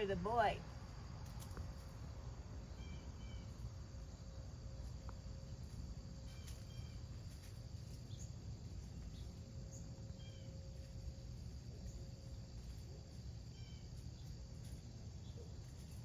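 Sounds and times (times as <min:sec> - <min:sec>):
insect chorus chirping: 0:00.0 - 0:16.0.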